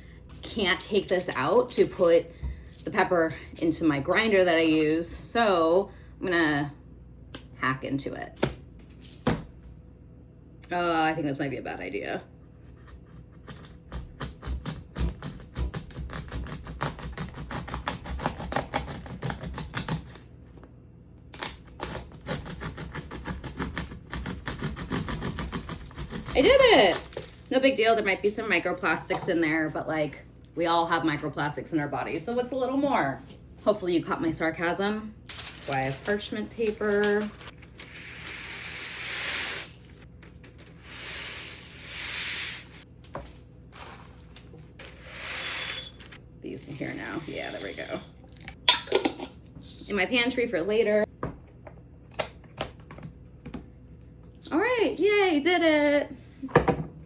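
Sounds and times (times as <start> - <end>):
peppercorns pouring off paper: 35.3 - 39.9, 40.8 - 42.8.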